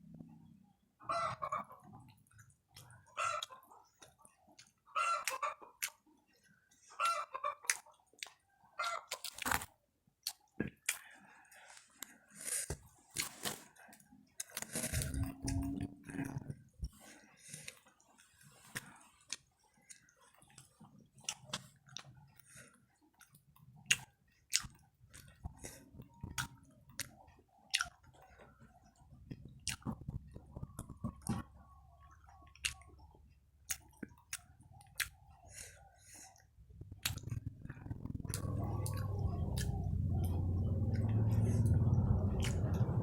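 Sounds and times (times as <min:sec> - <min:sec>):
person chewing crunchy snacks: 0:09.1 - 0:16.5, 0:17.4 - 0:28.3, 0:29.3 - 0:40.4, 0:41.0 - 0:43.0.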